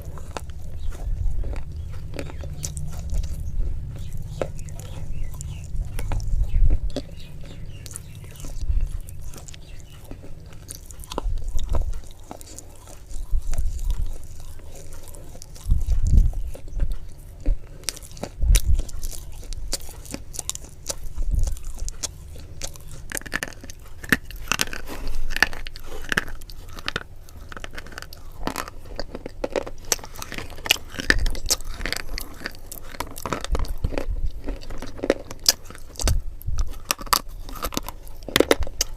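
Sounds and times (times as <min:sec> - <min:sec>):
crunchy bites and chewing: 0:00.0 - 0:38.9.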